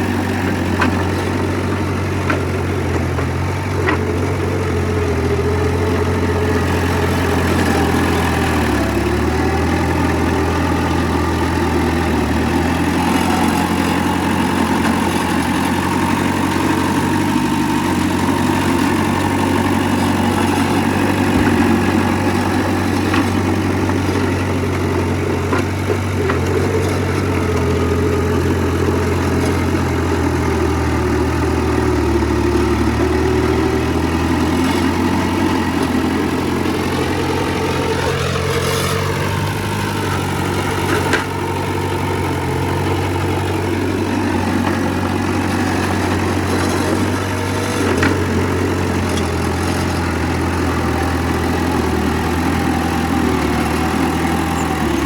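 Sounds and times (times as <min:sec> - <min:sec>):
heavy diesel machinery running: 0:00.0 - 0:55.0
knocks and clanks: 0:21.2 - 0:22.0.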